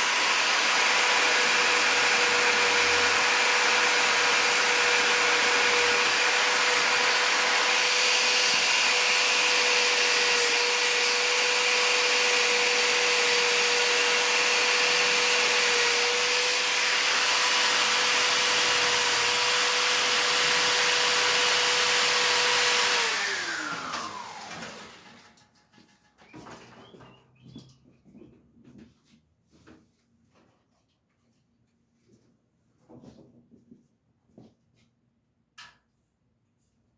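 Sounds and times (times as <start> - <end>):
power tool wire brush whining: 0.0 - 25.4.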